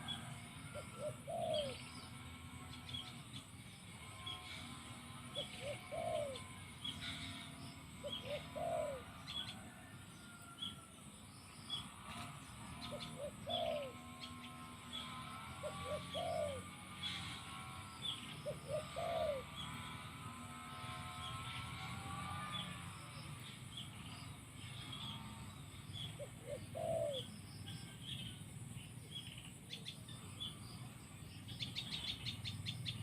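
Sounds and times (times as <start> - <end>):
dove cooing: 0.0 - 3.2, 4.0 - 10.6, 11.8 - 24.0, 24.9 - 27.4
small birds chirping: 0.0 - 10.6, 11.4 - 33.0.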